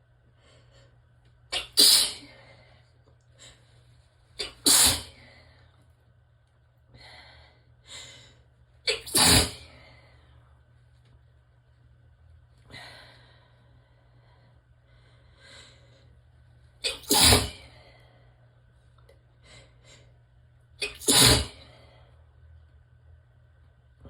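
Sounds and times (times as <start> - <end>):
person sneezing: 1.5 - 2.3, 4.4 - 5.2, 8.9 - 9.6, 20.8 - 21.6
person breathing: 12.7 - 16.2.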